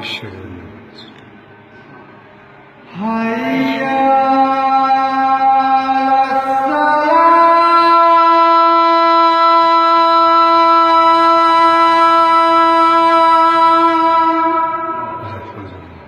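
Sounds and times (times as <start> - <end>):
man singing a long note: 2.8 - 16.0.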